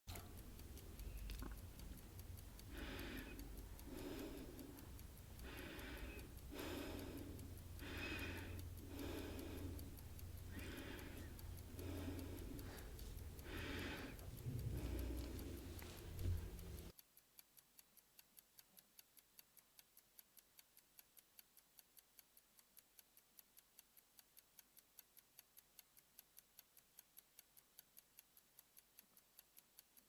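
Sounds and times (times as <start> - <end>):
faint clock ticking: 0.1 - 30.0
soft breathing: 0.3 - 16.9.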